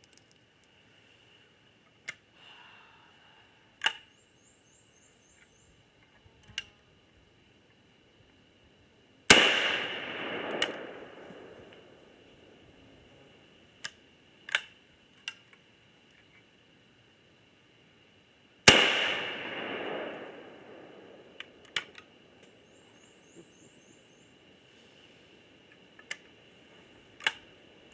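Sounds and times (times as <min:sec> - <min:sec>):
casings clicking and clinking: 0:00.0 - 0:00.7
loud sharp crack: 0:09.3 - 0:12.0, 0:18.7 - 0:22.0.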